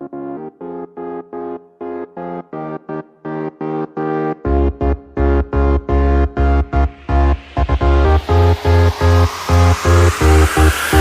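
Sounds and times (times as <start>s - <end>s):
electronic dance music: 5.3s - 11.0s
rising noise sweep: 6.6s - 11.0s.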